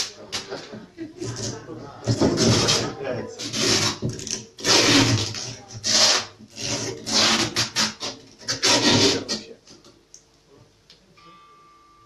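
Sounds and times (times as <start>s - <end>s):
microphone rubbing and scraping: 1.2s - 9.4s.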